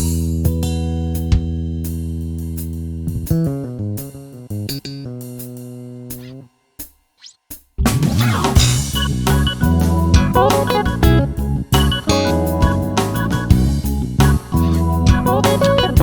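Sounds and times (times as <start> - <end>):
keyboard instrumental music: 8.1 - 16.0.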